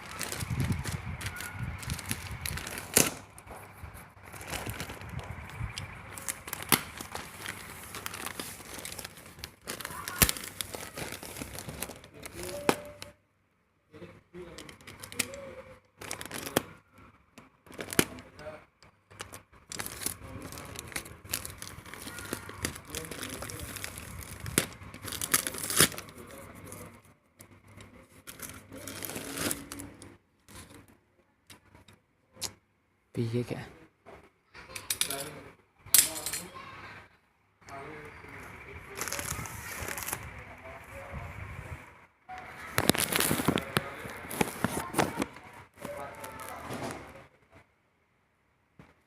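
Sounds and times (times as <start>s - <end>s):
packaging crinkling and tearing: 0.0s - 13.2s, 14.4s - 31.6s, 38.8s - 40.4s, 42.4s - 47.1s.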